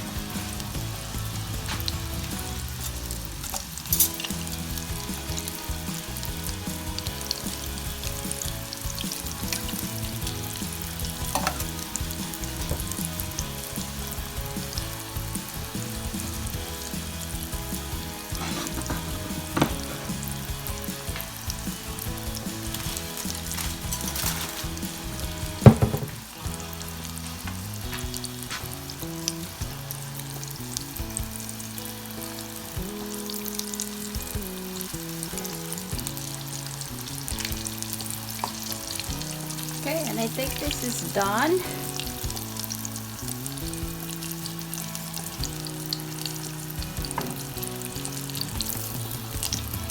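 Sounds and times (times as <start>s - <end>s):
okra deep-frying in oil: 0.0s - 49.9s
sharp knocks: 25.6s - 26.3s.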